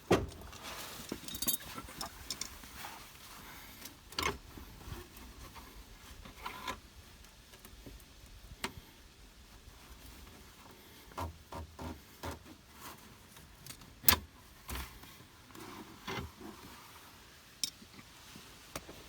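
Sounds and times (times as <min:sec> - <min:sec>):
metal parts and tools clicking: 0:01.1 - 0:02.6.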